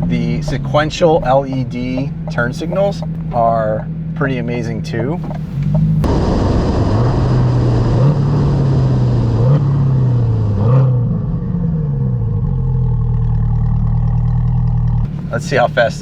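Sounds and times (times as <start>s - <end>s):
road and wind rush: 0.0s - 4.2s, 5.1s - 13.1s, 14.3s - 16.0s
car engine revving on downshifts: 5.2s - 12.4s.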